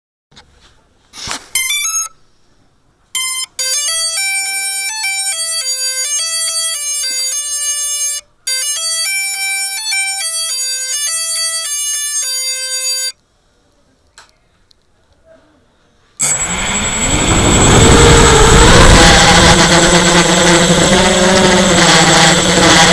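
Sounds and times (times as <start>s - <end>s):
motors beeping a melody: 1.6s - 2.2s, 3.2s - 13.2s, 16.2s - 22.9s.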